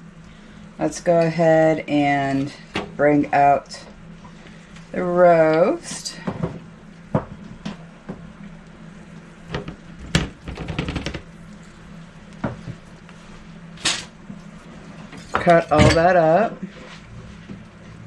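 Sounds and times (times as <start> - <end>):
cookware knocks and clatters: 15.2 - 16.1.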